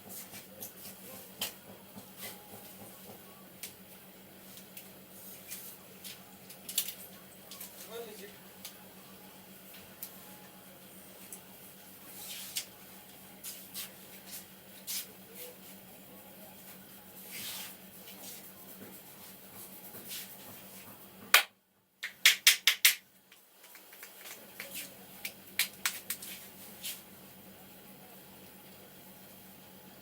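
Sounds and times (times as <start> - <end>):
loud sharp snaps: 21.3 - 23.0.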